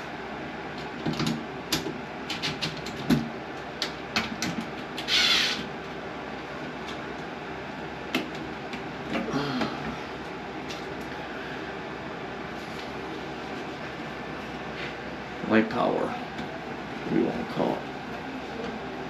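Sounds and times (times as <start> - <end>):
background hum: 0.0 - 19.0
hands clicking and knocking on fan housing: 0.7 - 5.1, 8.1 - 9.9.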